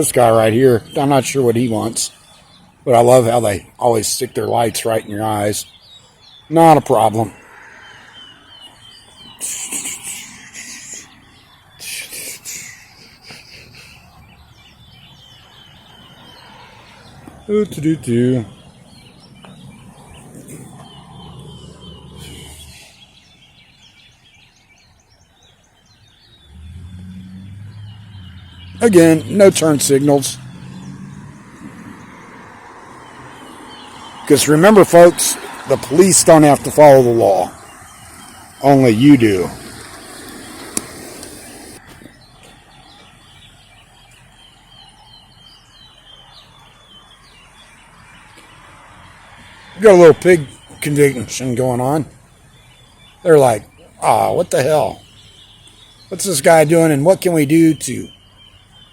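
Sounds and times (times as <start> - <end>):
small birds chirping: 0.0 - 58.9.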